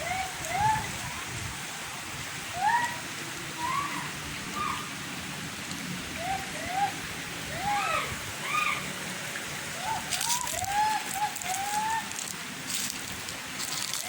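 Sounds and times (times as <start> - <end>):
steady hiss: 0.0 - 14.0
short whistle-like calls: 9.8 - 12.2
rustle of clicks: 10.0 - 14.0.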